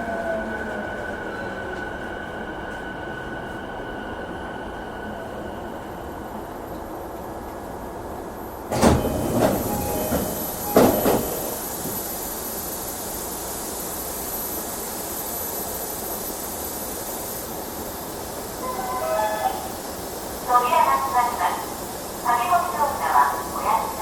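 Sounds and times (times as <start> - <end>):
train car hum: 0.0 - 24.0
train doors clunking open: 8.7 - 12.0, 18.6 - 19.8.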